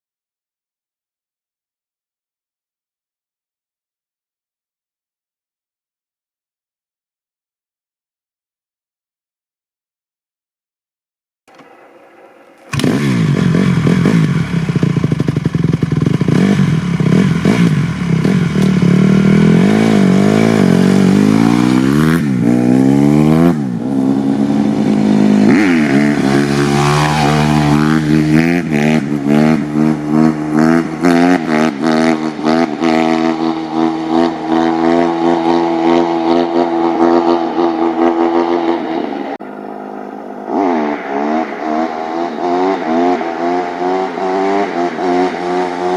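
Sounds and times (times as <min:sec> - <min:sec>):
dirt bike engine revving: 0:11.5 - 0:45.9.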